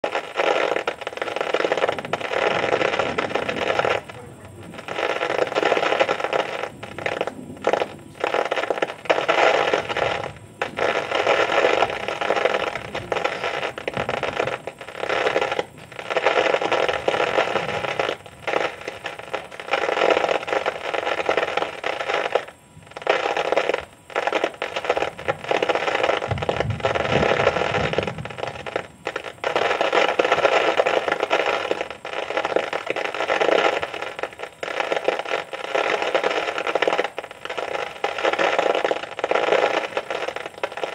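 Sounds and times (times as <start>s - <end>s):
heavy rain pouring: 1.8s - 18.6s.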